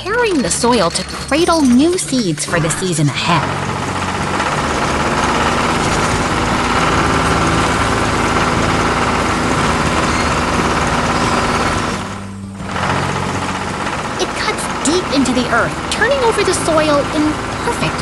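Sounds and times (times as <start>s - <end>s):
tractor engine running: 0.0s - 18.0s.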